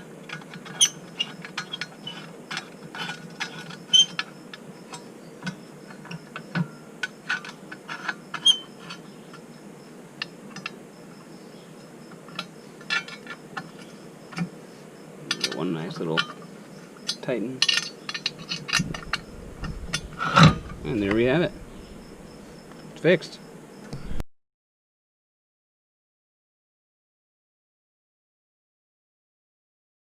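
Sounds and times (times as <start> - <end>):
screw clicking and squeaking: 0.7 - 2.3, 3.0 - 4.3, 8.0 - 9.0, 17.1 - 22.3.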